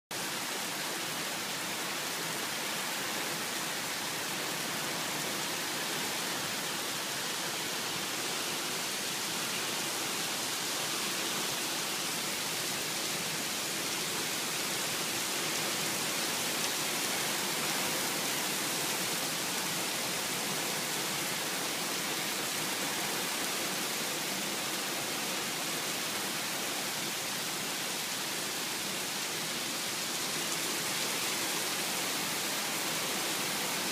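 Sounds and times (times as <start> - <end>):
rain falling steadily: 0.1 - 33.9.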